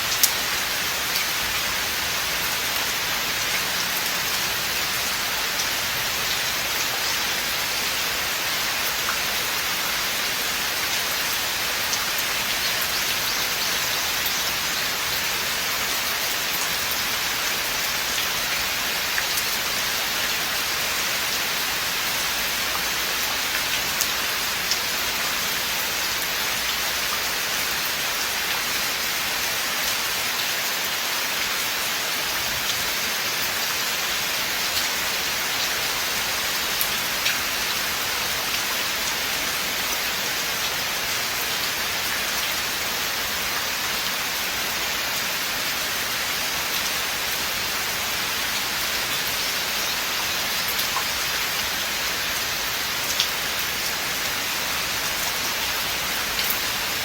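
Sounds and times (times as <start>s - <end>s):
raindrops ticking on leaves: 0.0s - 31.1s
steady rain hiss: 0.0s - 57.0s.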